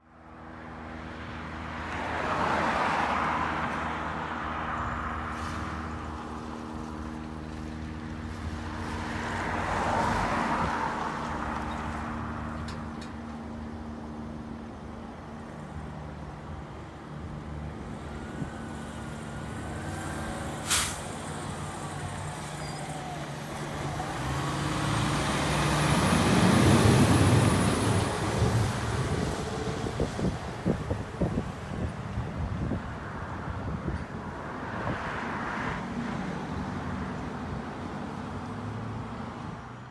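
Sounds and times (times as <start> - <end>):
air brake hiss: 20.6 - 21.5.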